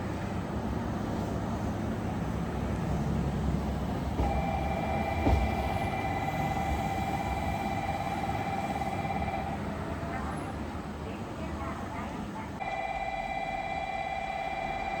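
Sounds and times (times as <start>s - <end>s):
train rumbling: 0.0s - 15.0s
sustained tone: 4.2s - 9.9s.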